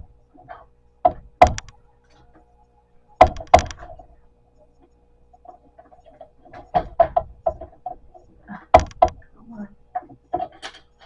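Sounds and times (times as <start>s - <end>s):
wooden furniture parts knocking: 0.4s - 1.7s, 3.2s - 4.1s, 5.5s - 9.2s, 10.0s - 10.9s.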